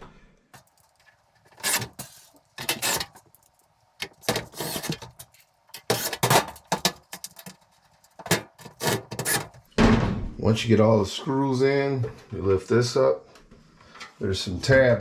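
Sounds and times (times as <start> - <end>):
small metal screws rattling: 0.6 - 9.6.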